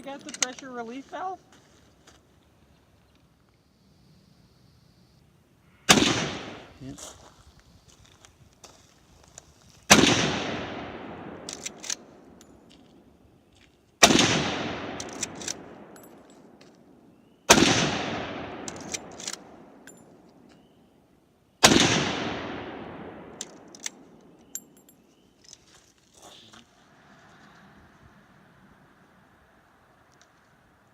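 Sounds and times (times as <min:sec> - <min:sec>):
gunshots with echo: 0:05.9 - 0:06.8, 0:09.9 - 0:11.5, 0:14.0 - 0:16.0, 0:17.5 - 0:19.8, 0:21.6 - 0:23.6.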